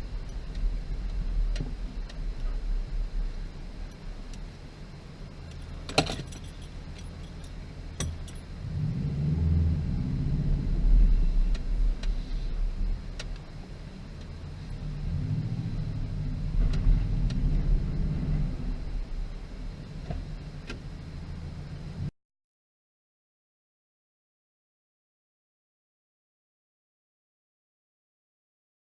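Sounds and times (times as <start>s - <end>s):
car engine running: 0.0s - 22.1s
sharp clicks and rattles: 5.5s - 8.5s.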